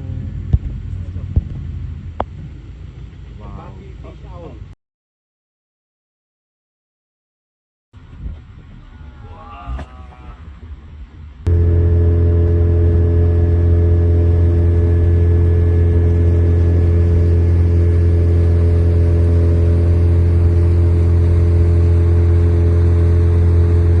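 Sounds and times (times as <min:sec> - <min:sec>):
boat engine droning: 0:00.0 - 0:04.3, 0:11.5 - 0:24.0.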